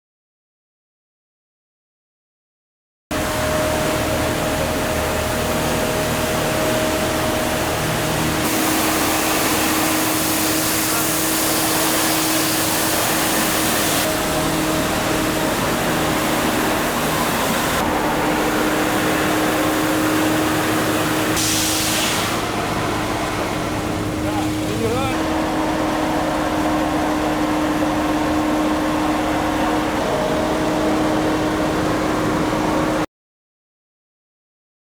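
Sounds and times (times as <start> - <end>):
road sweeper steady tone: 3.1 - 33.1
rushing hiss of suction: 8.4 - 14.2, 19.6 - 22.8.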